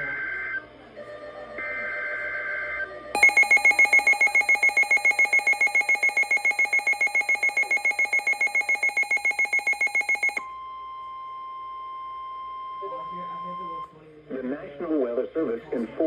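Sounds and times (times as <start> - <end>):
rapid alarm beeping: 3.2 - 10.4
steady alarm tone: 3.2 - 10.4.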